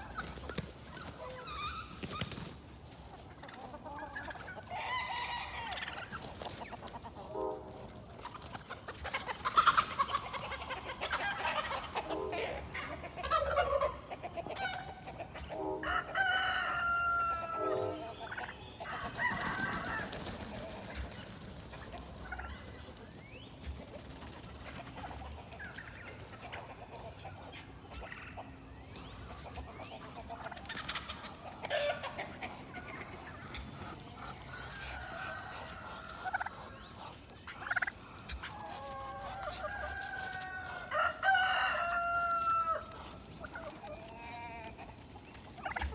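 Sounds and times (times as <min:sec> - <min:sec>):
turkey gobbling: 0:00.0 - 0:28.5, 0:29.3 - 0:45.9
hens clucking: 0:00.0 - 0:45.9
roosters crowing: 0:03.7 - 0:06.2, 0:11.0 - 0:20.8, 0:33.5 - 0:45.0.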